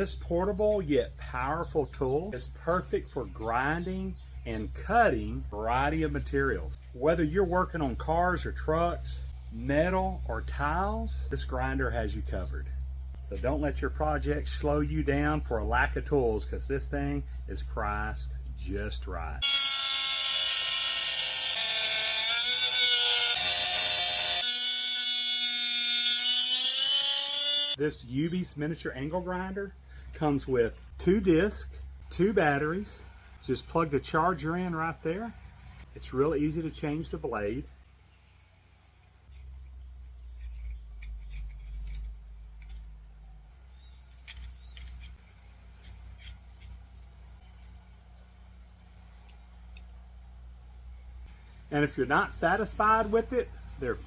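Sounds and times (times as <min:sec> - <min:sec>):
mini angle grinder whining: 0:19.4 - 0:27.8
small metallic clicks and scrapes: 0:39.0 - 0:43.1, 0:44.0 - 0:50.2.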